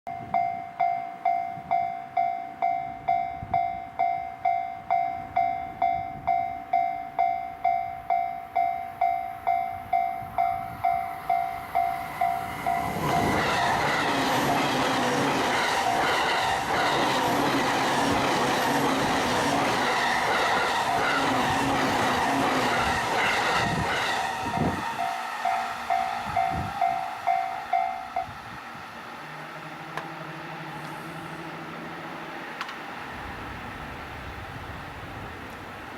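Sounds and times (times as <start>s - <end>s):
train wheels rushing: 9.5s - 35.9s
level crossing bell ringing: 25.0s - 28.3s.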